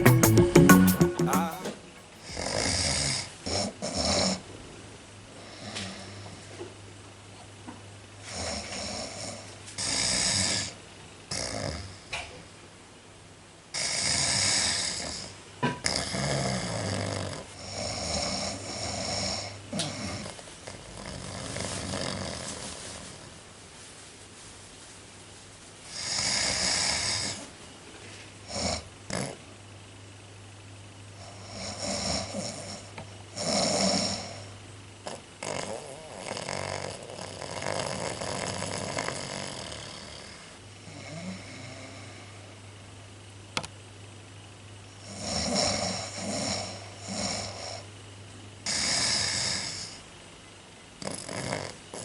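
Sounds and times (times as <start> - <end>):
person snoring: 1.2 - 4.4, 13.8 - 22.7, 25.9 - 27.4, 31.2 - 34.5, 35.1 - 42.4, 45.0 - 47.8, 48.6 - 50.0, 51.0 - 52.0.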